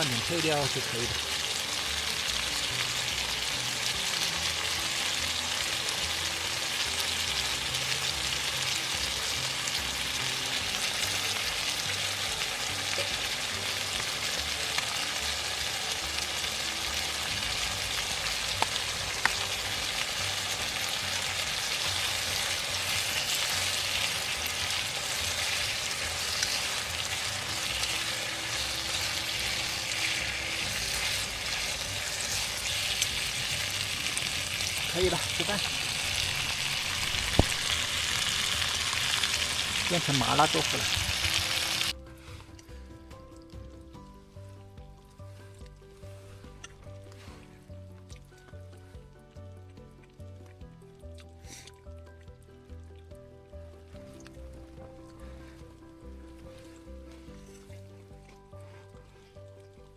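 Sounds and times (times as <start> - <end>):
sauce sizzling in a pan: 0.0 - 42.0.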